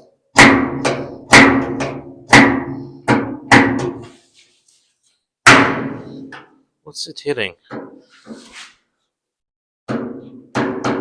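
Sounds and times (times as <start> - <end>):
metal truck door banging shut: 5.5 - 6.2.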